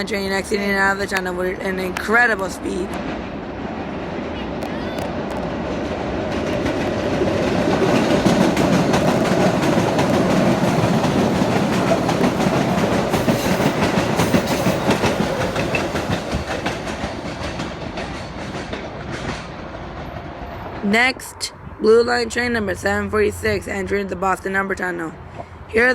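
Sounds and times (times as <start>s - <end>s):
train passing at speed: 0.0s - 25.9s
wheels knocking over rail joints: 5.0s - 20.2s.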